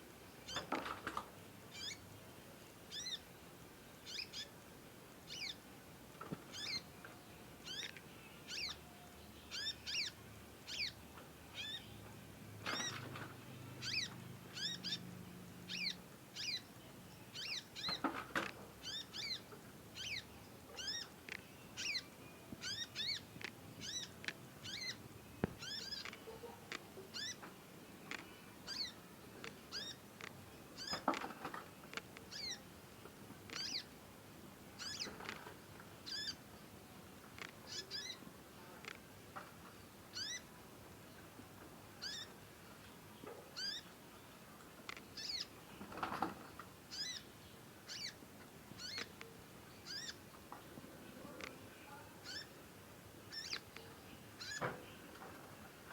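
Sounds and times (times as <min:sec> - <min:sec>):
young songbird chirping: 0:01.7 - 0:02.1, 0:02.9 - 0:03.3, 0:04.0 - 0:04.6, 0:05.3 - 0:05.6, 0:06.5 - 0:06.9, 0:07.6 - 0:12.0, 0:13.8 - 0:15.1, 0:15.7 - 0:18.1, 0:18.8 - 0:26.3, 0:27.1 - 0:29.0, 0:29.7 - 0:30.1, 0:30.8 - 0:31.1, 0:32.3 - 0:32.6, 0:33.5 - 0:33.9, 0:34.8 - 0:35.1, 0:36.0 - 0:36.5, 0:37.7 - 0:38.2, 0:40.1 - 0:40.5, 0:42.0 - 0:42.4, 0:43.6 - 0:43.9, 0:45.1 - 0:45.6, 0:46.9 - 0:48.2, 0:48.8 - 0:50.3, 0:52.2 - 0:52.6, 0:53.2 - 0:54.6.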